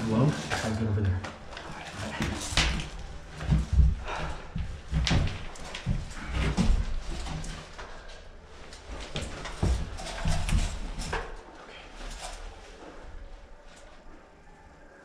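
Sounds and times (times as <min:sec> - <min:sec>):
footsteps and knocks on floor: 0:01.1 - 0:08.1, 0:08.8 - 0:11.4.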